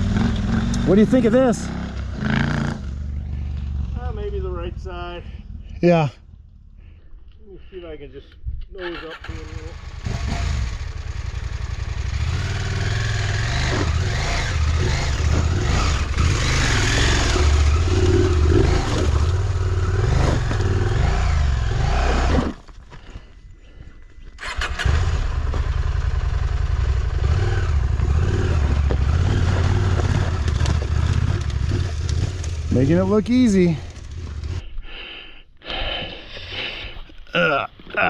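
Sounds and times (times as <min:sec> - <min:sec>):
motorcycle engine revving unevenly: 0:00.0 - 0:05.7, 0:09.3 - 0:22.6, 0:24.4 - 0:34.6.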